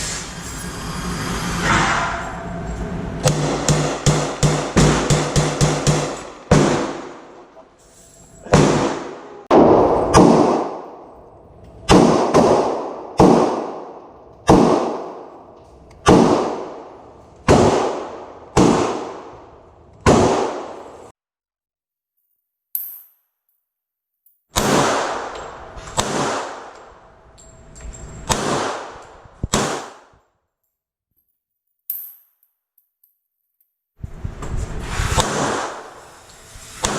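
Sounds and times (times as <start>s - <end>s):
gunshots with echo: 3.2s - 7.6s, 8.4s - 11.2s, 11.9s - 21.1s, 24.6s - 26.8s, 28.2s - 30.0s, 35.1s - 36.0s.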